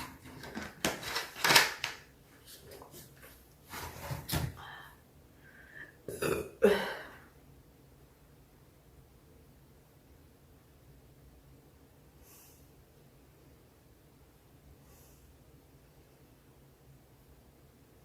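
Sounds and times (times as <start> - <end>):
person burping: 6.0 - 7.2.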